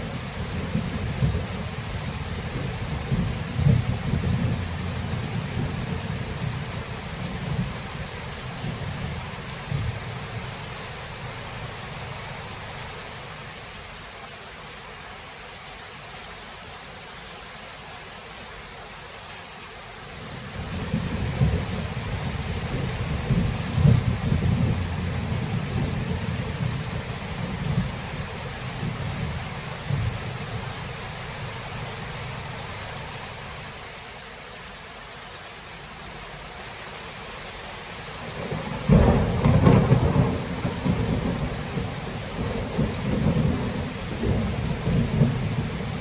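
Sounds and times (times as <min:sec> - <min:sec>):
steady rain: 0:00.0 - 0:46.0
rolling thunder: 0:00.4 - 0:07.9, 0:20.6 - 0:30.7, 0:38.3 - 0:46.0.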